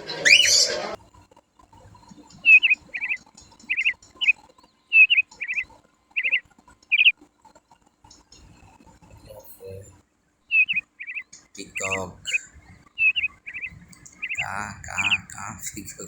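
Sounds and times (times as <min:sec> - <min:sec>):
small bird chirping: 0:00.0 - 0:01.0, 0:01.9 - 0:07.2, 0:10.5 - 0:16.0.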